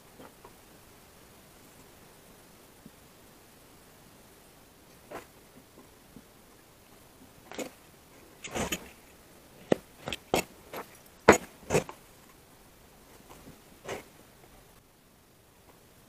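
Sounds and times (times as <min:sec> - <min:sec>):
scraping rustle: 0:07.5 - 0:12.0.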